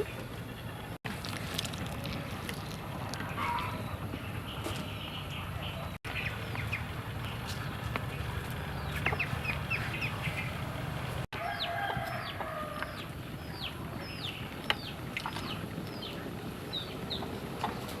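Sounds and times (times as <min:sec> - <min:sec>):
low steady background rumble: 0:00.0 - 0:18.0
chicks peeping: 0:03.9 - 0:10.6.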